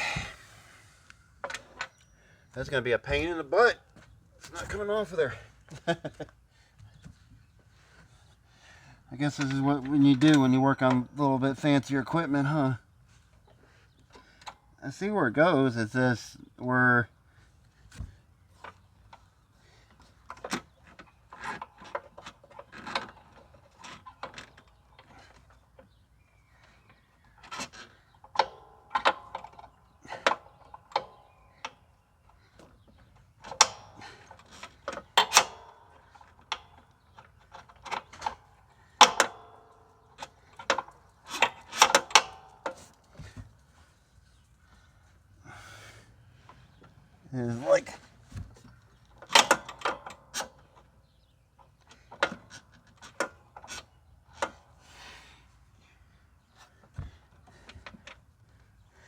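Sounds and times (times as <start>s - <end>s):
metal clinks and rattles of tools: 33.2s - 43.4s.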